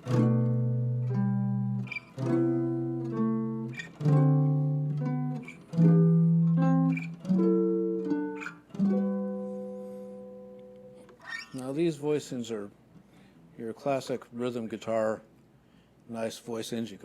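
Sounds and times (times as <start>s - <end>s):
guitar chords ringing: 0.0s - 11.7s.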